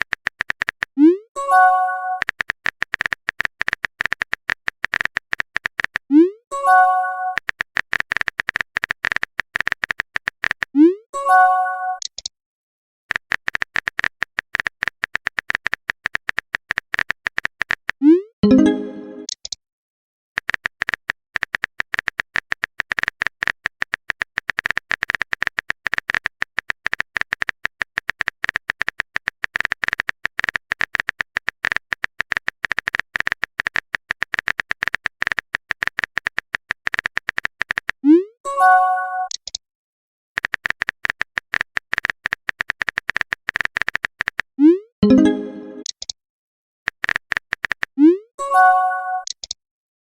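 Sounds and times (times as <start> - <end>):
phone keyboard typing clicks: 0.0 - 6.1, 7.3 - 10.8, 13.1 - 19.6, 20.4 - 38.0, 39.2 - 39.6, 40.4 - 46.2, 46.9 - 48.0, 49.1 - 49.6
message alert pop and chime: 18.4 - 19.3, 44.8 - 45.9, 48.1 - 49.3.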